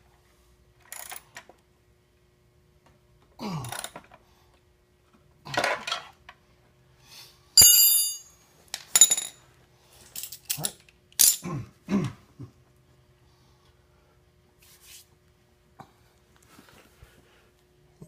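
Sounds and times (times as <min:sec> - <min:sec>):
metallic clinks and clatters: 0:07.6 - 0:09.4.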